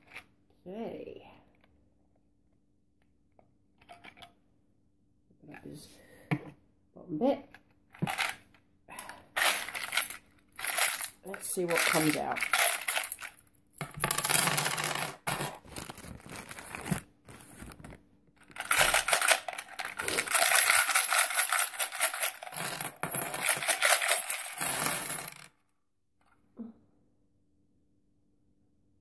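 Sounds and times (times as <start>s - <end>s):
coins rattling out of money box: 8.0s - 8.4s, 9.4s - 15.6s, 18.5s - 25.5s.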